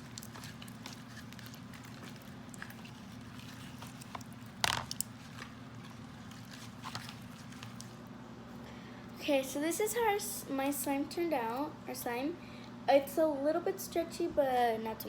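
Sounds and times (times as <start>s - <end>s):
slime squelching: 0.0s - 8.1s.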